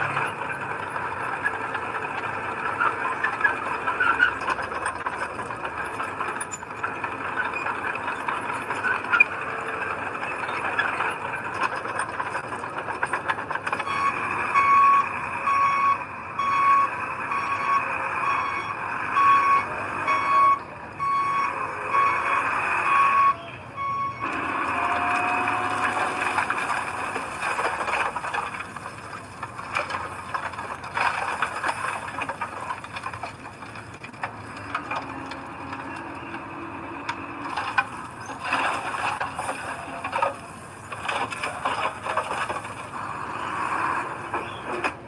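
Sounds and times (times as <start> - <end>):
heavy machinery scraping and rattling: 0.0 - 45.0
truck engine running: 0.0 - 45.0
truck reversing alarm beeping: 12.8 - 28.0.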